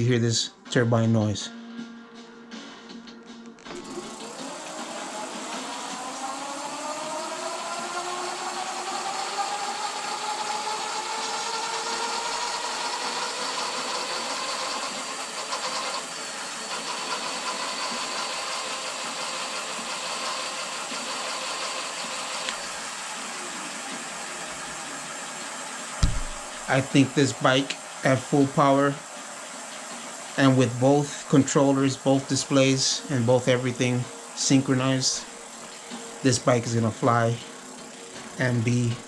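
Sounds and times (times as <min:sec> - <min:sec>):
electric motor whine: 0:03.7 - 0:26.9.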